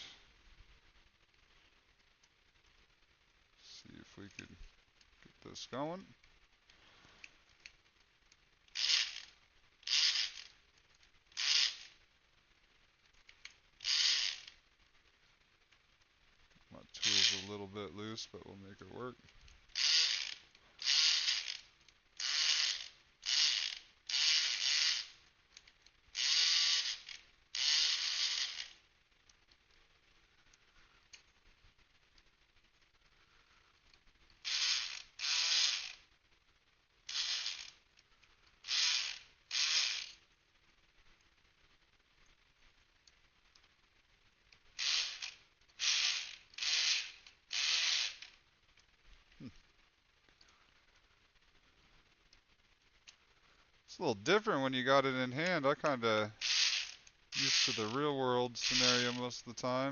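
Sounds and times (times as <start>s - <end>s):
electric pick gun buzzing: 9.9s - 10.5s, 13.8s - 14.5s, 17.0s - 17.5s, 19.8s - 21.6s, 22.2s - 25.1s, 26.2s - 28.7s, 34.5s - 36.0s, 37.1s - 37.7s, 38.7s - 40.1s, 44.8s - 48.3s, 56.4s - 57.9s, 58.6s - 59.3s.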